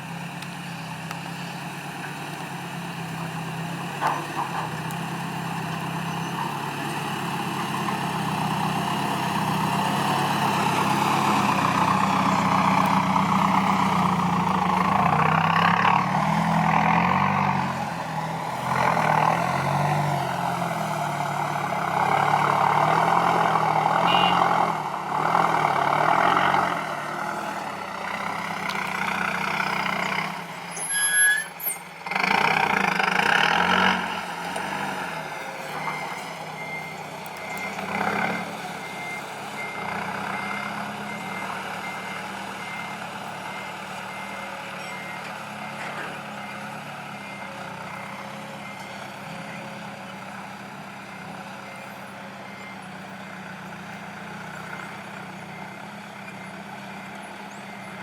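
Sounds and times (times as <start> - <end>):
heavy diesel engines working: 0.0 - 58.0
reversing alarm beeping: 23.3 - 24.5, 33.3 - 53.2, 54.0 - 58.0.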